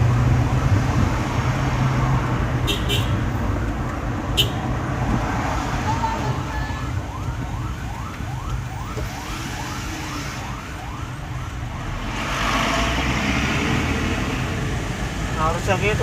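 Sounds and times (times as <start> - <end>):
low rumble of moving vehicle: 0.0 - 16.0
siren in fast yelp mode: 6.3 - 11.5.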